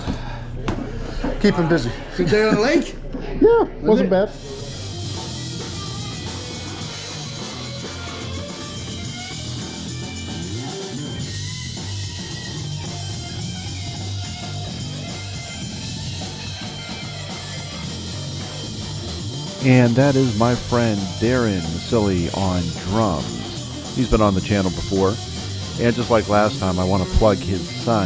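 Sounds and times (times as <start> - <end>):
drum kit: 4.3 - 28.0
electric guitar: 4.3 - 28.0
low bass line: 17.8 - 28.0.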